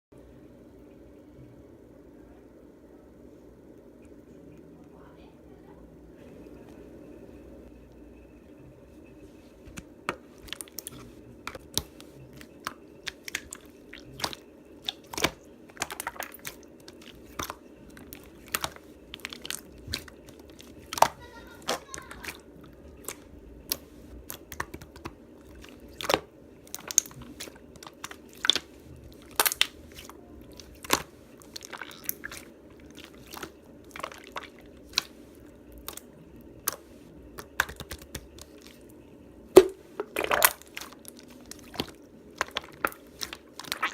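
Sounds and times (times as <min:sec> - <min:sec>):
slime clicking and crackling: 0:10.4 - 0:35.2, 0:35.8 - 0:38.8, 0:40.2 - 0:43.9.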